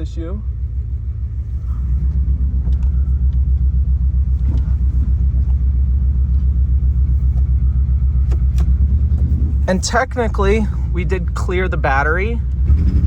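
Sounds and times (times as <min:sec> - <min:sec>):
car engine exhaust rumble: 0:00.0 - 0:13.0.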